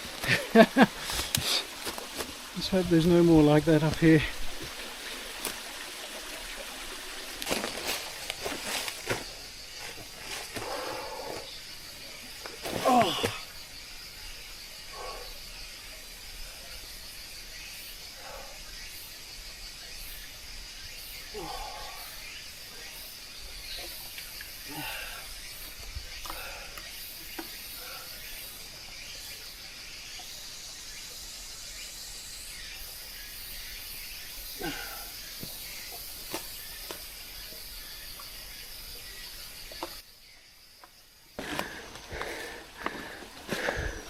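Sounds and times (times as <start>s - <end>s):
high-pitched insect chorus: 0.0s - 44.0s
rustles and snaps of footsteps: 7.3s - 10.7s.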